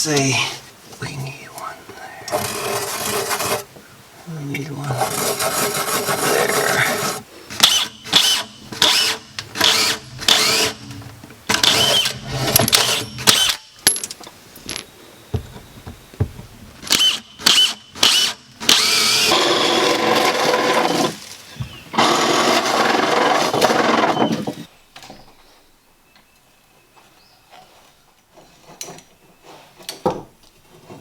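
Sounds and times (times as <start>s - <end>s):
power drill drilling: 7.5s - 10.8s, 11.5s - 13.6s, 16.9s - 21.2s, 22.0s - 24.4s.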